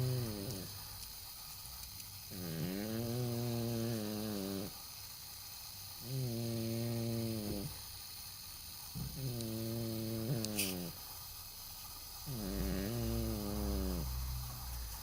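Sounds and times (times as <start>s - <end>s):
cat snoring: 0.0s - 0.8s, 2.3s - 4.8s, 6.0s - 7.8s, 9.0s - 11.0s, 12.2s - 15.0s.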